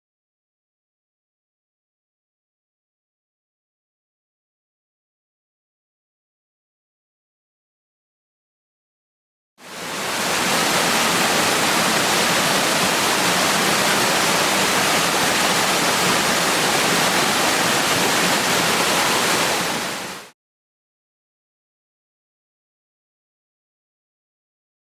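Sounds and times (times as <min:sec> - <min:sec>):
waterfall roaring: 0:09.6 - 0:20.3.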